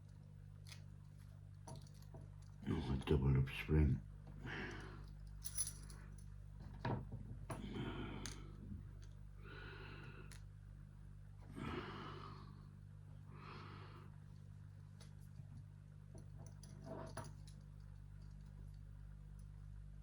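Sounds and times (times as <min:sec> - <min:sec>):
steady low hum: 0:00.0 - 0:20.0
soft breaths: 0:07.5 - 0:10.5, 0:11.4 - 0:14.6.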